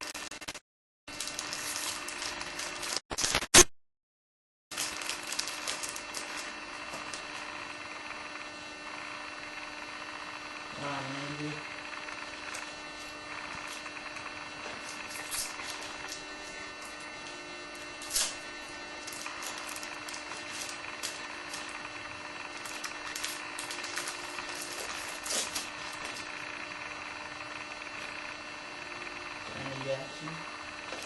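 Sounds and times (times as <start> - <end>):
trading cards rustling and clicking: 1.1 - 3.6, 4.7 - 7.5, 19.0 - 26.3.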